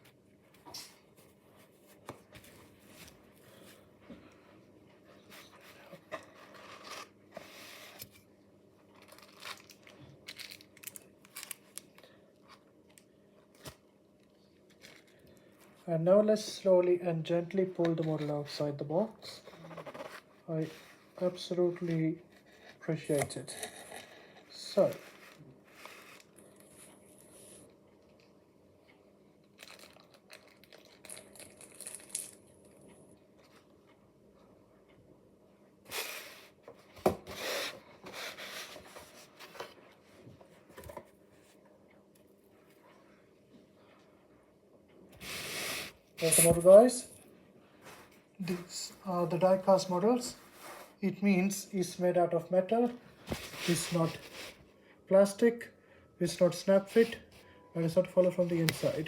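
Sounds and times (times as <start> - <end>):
packaging rustling: 8.9 - 11.9, 29.6 - 31.6
packaging crinkles and clicks: 8.9 - 12.0, 29.5 - 31.2.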